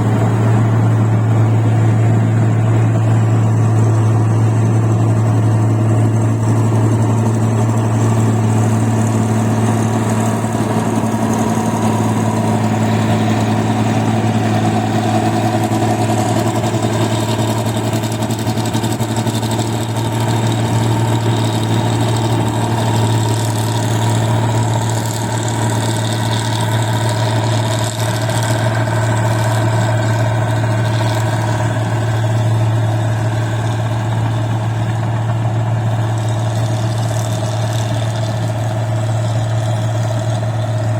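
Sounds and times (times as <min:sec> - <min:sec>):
harvester engine humming: 0:00.0 - 0:40.9.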